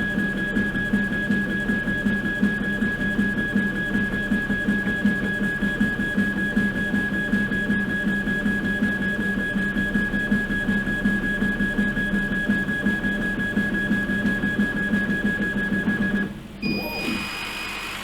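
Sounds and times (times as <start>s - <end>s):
laser engraver whine: 0.0s - 18.0s
pulsing motor buzz: 16.7s - 18.0s.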